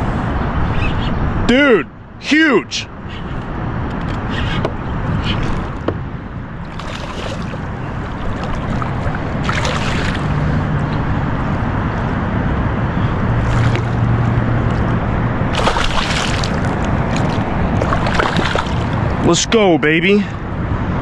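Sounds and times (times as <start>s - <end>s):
water sloshing against boat: 4.0s - 12.1s, 13.3s - 19.6s
sharp splashes: 6.6s - 10.6s, 13.4s - 14.9s, 15.5s - 19.3s.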